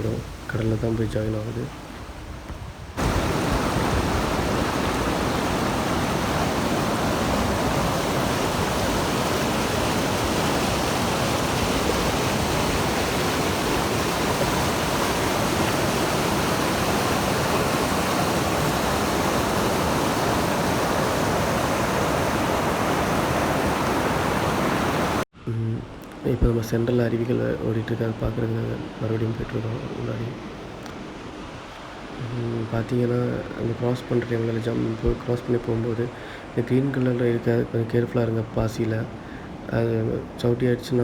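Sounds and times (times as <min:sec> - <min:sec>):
water rushing over rocks: 0:03.0 - 0:25.2.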